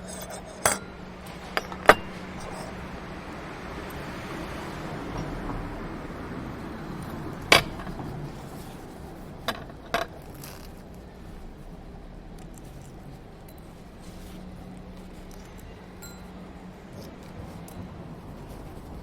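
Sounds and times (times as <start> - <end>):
tableware clinking: 0.0 - 2.8, 16.0 - 16.4
low steady background noise: 0.0 - 19.0.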